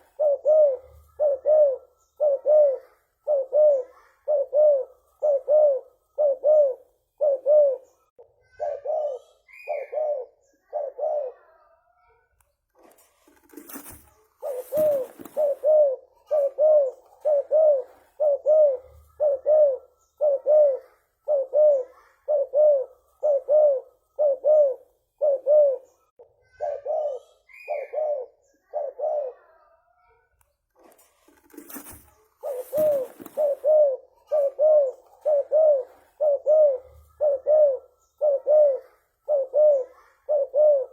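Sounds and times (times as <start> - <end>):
dove cooing: 0.0 - 11.6, 13.2 - 29.8, 30.8 - 40.9.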